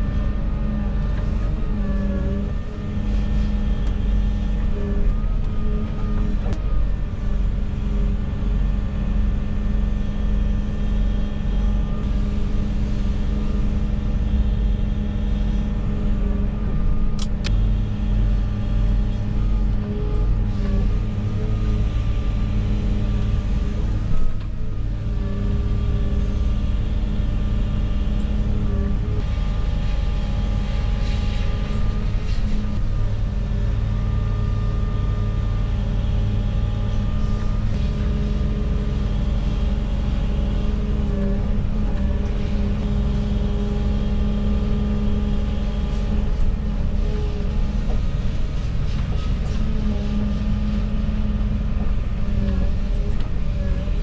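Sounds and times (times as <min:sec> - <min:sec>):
diesel excavator engine running: 0:00.0 - 0:54.0
faint whining tone: 0:00.0 - 0:54.0.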